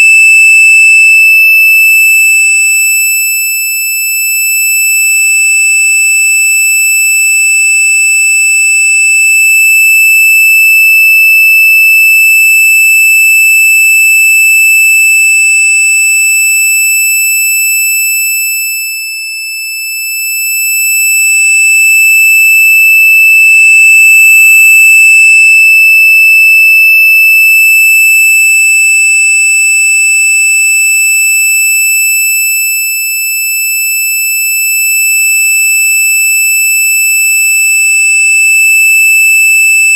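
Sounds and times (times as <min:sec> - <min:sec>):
high-pitched electronic tone: 0:00.0 - 0:01.2, 0:23.4 - 0:25.7.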